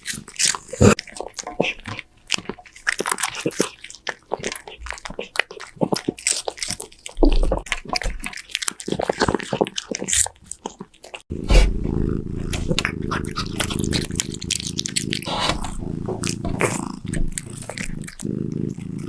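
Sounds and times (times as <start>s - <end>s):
cat crunching food: 0.0s - 11.2s, 11.8s - 19.0s
steady low rumble: 11.3s - 14.5s.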